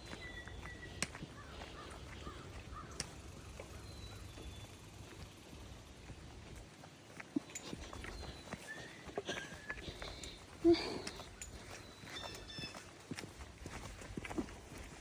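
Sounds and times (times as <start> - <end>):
low outdoor rumble: 0.0 - 11.6
faint bird cawing: 0.1 - 4.0.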